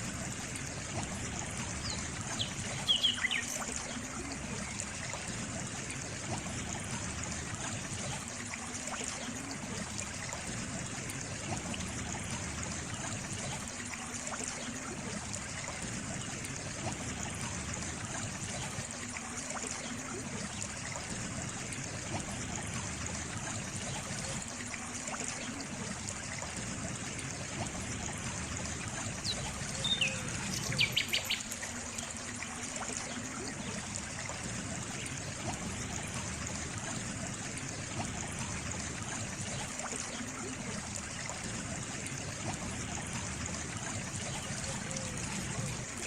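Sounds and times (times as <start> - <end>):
water trickling: 0.0 - 46.0
bird chirping: 2.4 - 3.5, 29.3 - 31.4.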